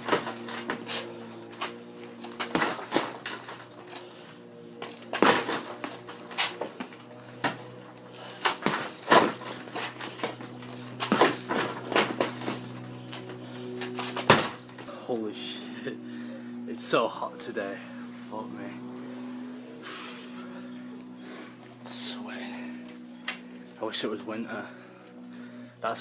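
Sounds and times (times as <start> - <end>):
punches thudding on heavy bag: 0.0 - 0.9, 2.3 - 3.6, 5.1 - 6.0, 8.4 - 12.6, 14.0 - 14.8
steady low hum: 0.0 - 26.0.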